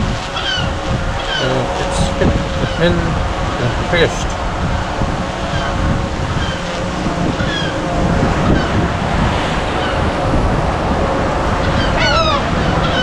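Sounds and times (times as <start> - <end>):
wind noise on microphone: 0.0 - 13.0
birds calling: 0.3 - 4.4, 11.6 - 13.0.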